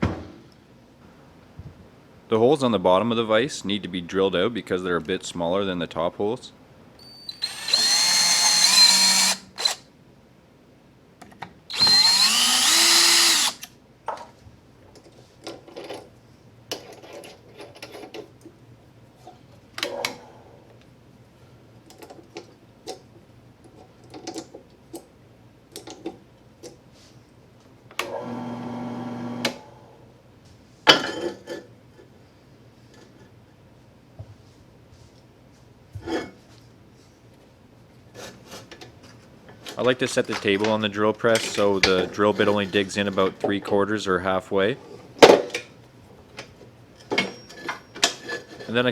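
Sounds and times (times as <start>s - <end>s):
power drill whining: 7.2s - 9.8s, 11.7s - 13.7s, 28.1s - 29.6s.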